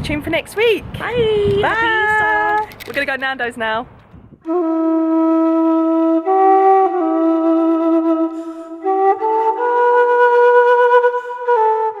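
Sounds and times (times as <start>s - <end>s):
slow flute-like melody: 4.4s - 12.0s.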